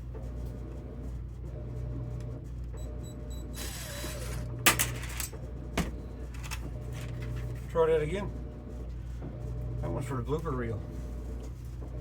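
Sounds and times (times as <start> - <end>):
steady low hum: 0.0 - 12.0
cordless drill running: 3.5 - 4.6.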